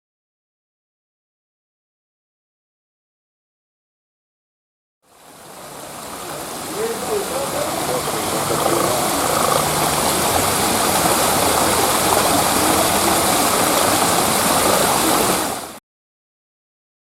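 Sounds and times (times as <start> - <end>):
rush of falling water: 5.0 - 15.8.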